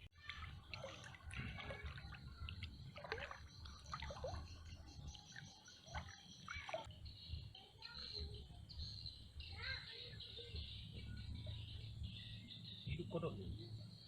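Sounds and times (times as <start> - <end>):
dripping and trickling water: 0.0 - 6.9.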